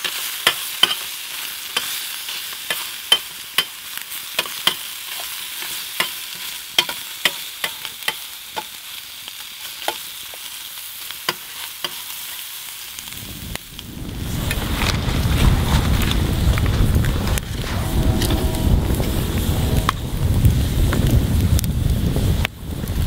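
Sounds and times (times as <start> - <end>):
food sizzling in a skillet: 0.0 - 14.8
low rumble: 14.1 - 22.5.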